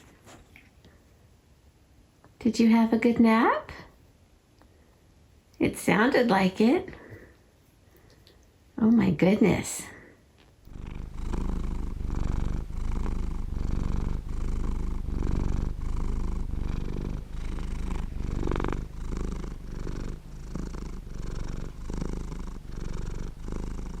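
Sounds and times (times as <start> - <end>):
cat purring: 10.6 - 24.0.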